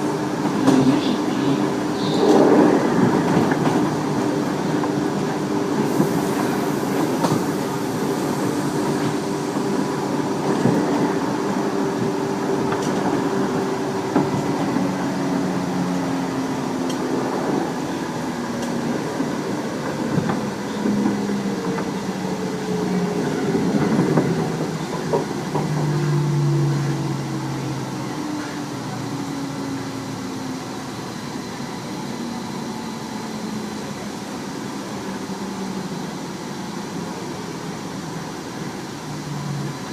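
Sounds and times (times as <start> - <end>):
wheel and rail running noise: 0.0 - 39.9
rail joint clicks: 0.3 - 15.0, 16.8 - 17.6, 18.5 - 22.1, 23.2 - 26.7.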